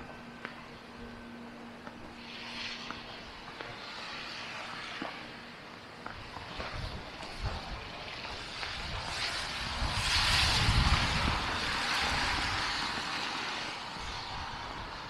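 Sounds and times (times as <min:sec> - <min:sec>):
vehicle passing: 0:08.4 - 0:15.0.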